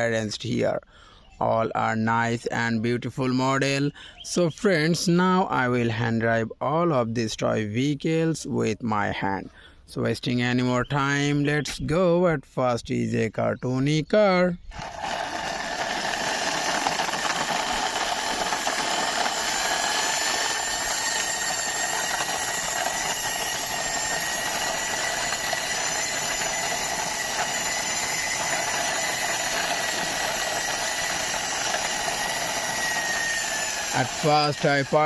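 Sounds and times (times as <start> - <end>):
engine-like running noise: 14.7 - 35.0
thin high whine: 14.7 - 35.0.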